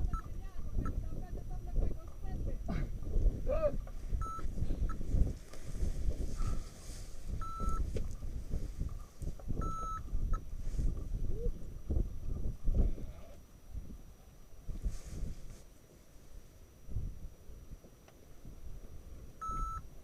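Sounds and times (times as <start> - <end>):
variometer beeps: 0.0 - 1.0, 4.2 - 5.0, 7.4 - 7.9, 9.6 - 10.5, 19.4 - 19.9
wind buffeting microphone: 0.0 - 15.6, 16.8 - 17.8.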